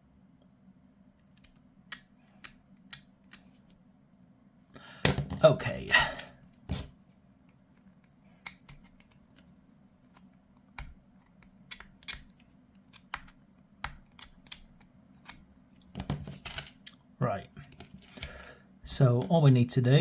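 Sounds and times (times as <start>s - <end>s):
low steady hum: 0.0s - 20.0s
small plastic parts clicking: 1.1s - 3.8s, 10.1s - 17.0s.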